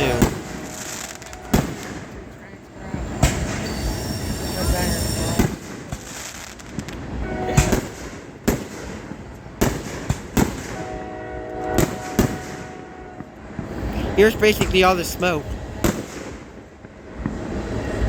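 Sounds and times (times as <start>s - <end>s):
train horn chord: 0.0s - 2.1s, 7.1s - 7.9s, 10.7s - 14.6s
fireworks banging: 0.0s - 18.0s.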